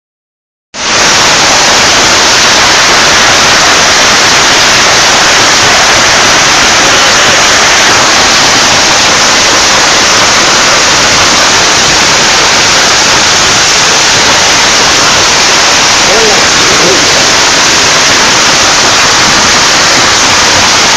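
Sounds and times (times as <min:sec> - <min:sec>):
heavy hail pelting down: 0:00.8 - 0:20.9.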